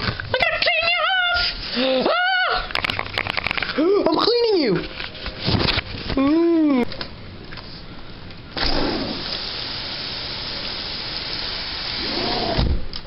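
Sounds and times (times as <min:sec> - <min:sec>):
heavy rain pouring: 0:08.9 - 0:12.6.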